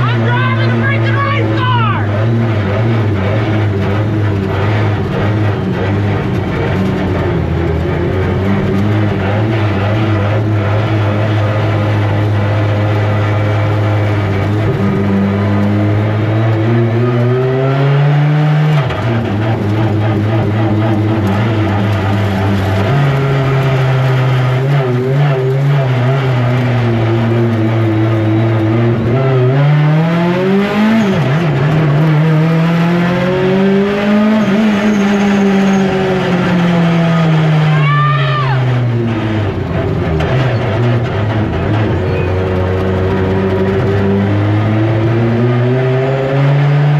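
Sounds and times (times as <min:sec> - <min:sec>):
race car engine revving: 0:00.0 - 0:46.9.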